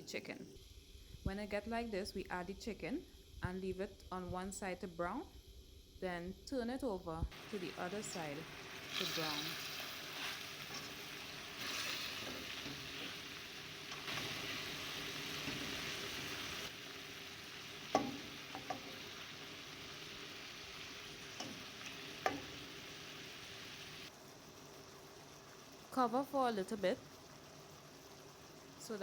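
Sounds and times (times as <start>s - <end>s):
chicken sizzling in a pot: 7.3s - 29.0s
utensil knocking on pot: 17.9s - 19.0s.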